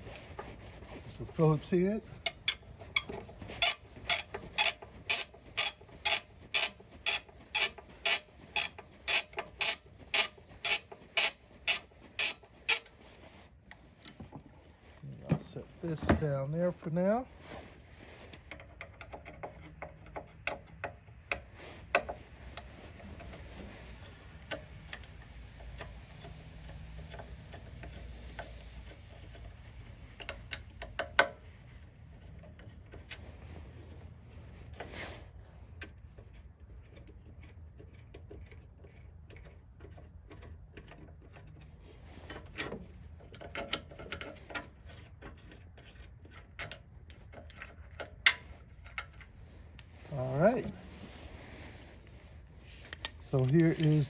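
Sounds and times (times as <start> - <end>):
small parts and tool clicking: 2.2 - 13.0.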